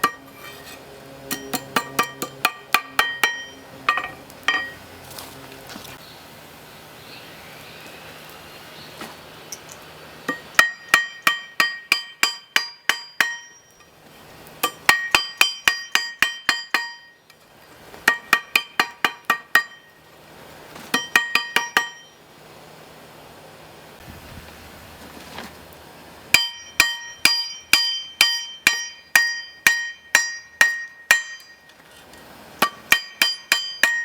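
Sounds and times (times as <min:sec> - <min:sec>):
hammer ringing on steel: 0:01.3 - 0:04.8, 0:10.3 - 0:13.9, 0:14.6 - 0:17.2, 0:18.1 - 0:20.0, 0:21.0 - 0:22.2, 0:26.4 - 0:31.8, 0:32.6 - 0:34.0.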